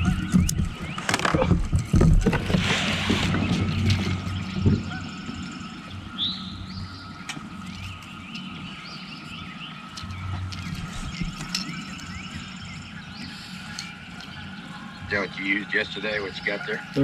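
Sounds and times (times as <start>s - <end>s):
small birds chirping: 0.0s - 17.0s.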